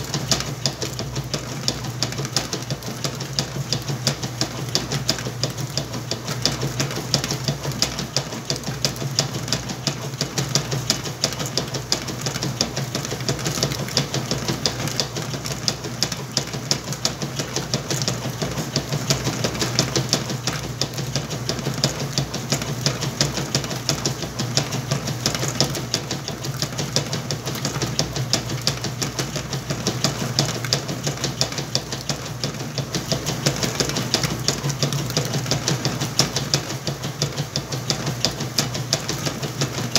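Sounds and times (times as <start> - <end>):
washing machine running: 0.0 - 39.9.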